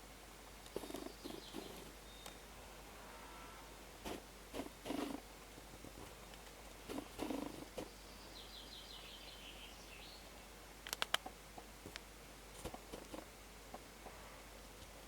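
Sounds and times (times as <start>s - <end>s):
sharp clicks: 10.8s - 11.3s.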